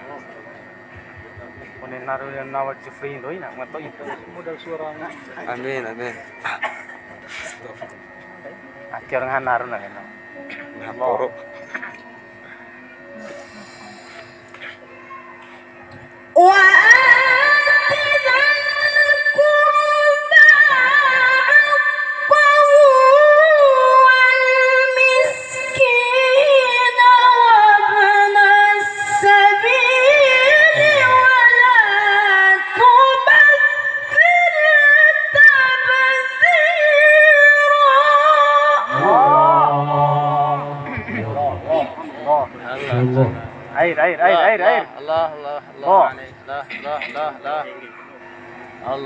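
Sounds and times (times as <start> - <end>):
person reciting melodically: 16.4 - 33.7, 34.3 - 48.2.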